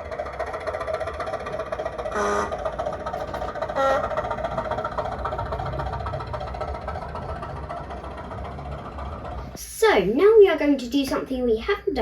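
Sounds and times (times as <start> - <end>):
recorded diesel engine through small speaker: 0.0 - 12.0
short horn blast: 2.1 - 2.6, 3.8 - 4.1.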